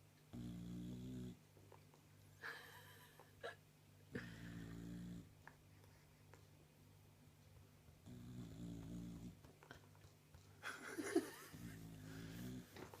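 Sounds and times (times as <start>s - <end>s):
dog snoring: 0.3s - 1.4s, 4.2s - 5.3s, 8.0s - 9.4s, 11.5s - 12.9s.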